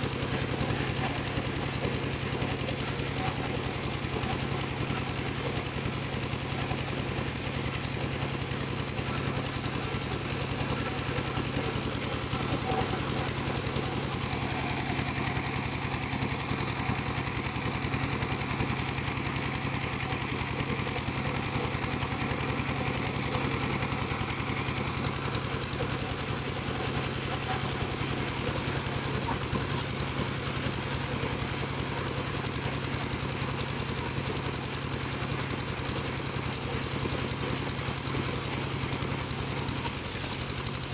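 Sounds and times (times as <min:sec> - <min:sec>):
piling machine engine pulsing: 0:00.0 - 0:40.9.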